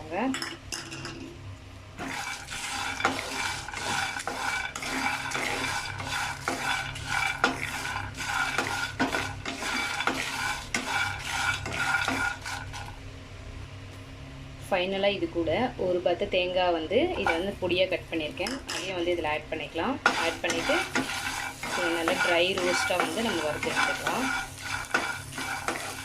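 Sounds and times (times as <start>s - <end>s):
nuts rattling in a pan: 2.1s - 12.9s, 20.0s - 26.0s.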